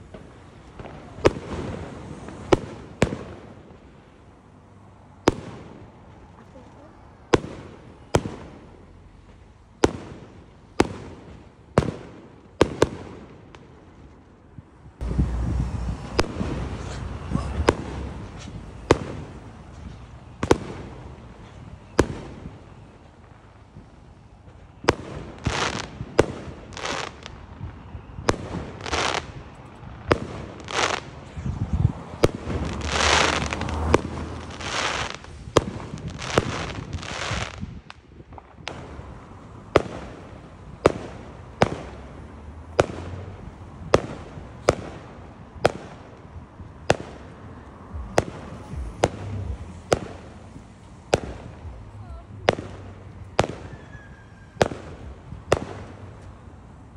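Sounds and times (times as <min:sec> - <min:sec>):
fireworks banging: 0:00.0 - 0:04.4, 0:05.2 - 0:56.9
short firework bursts: 0:00.0 - 0:04.4, 0:05.2 - 0:56.2.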